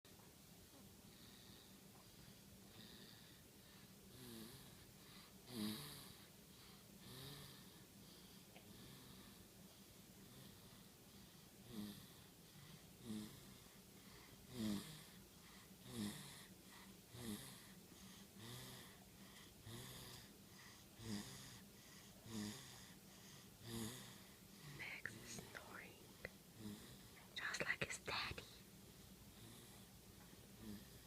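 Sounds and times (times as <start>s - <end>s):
wheezy snores: 2.7s - 9.4s, 10.2s - 25.9s, 26.6s - 27.2s, 29.3s - 31.0s.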